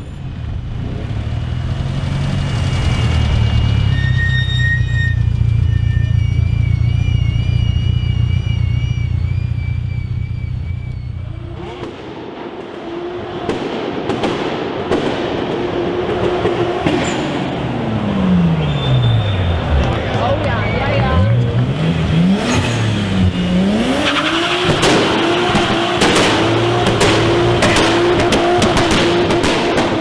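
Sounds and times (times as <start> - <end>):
car engine rumble: 0.0 - 30.0
high wavering whistling: 2.5 - 11.9, 18.4 - 19.8
engine pops: 24.1 - 30.0.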